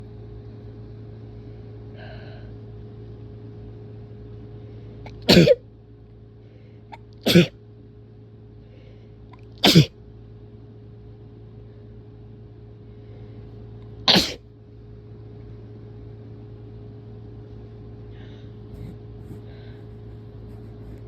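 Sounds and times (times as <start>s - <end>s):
person sneezing: 5.1s - 5.6s, 7.3s - 7.6s, 9.6s - 9.9s, 14.1s - 14.4s.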